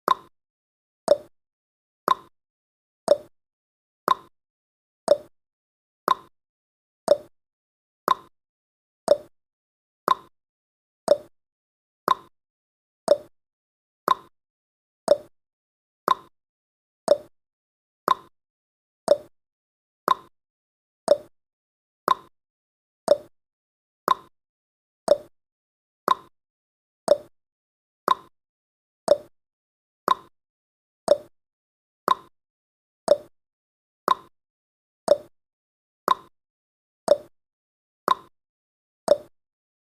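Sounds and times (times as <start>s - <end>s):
clock ticking: 29.1s - 29.3s, 39.1s - 39.3s.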